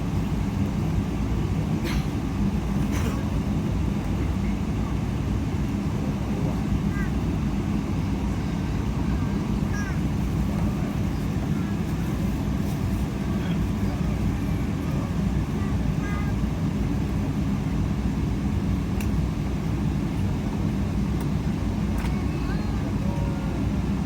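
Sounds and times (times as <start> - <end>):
faint voices: 4.1 - 17.1, 22.0 - 24.0.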